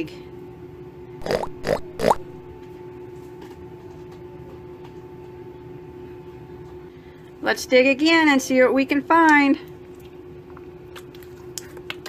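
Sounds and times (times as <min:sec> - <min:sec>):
steady low hum: 0:00.0 - 0:12.0
woman imitating pig oinks: 0:01.2 - 0:02.2.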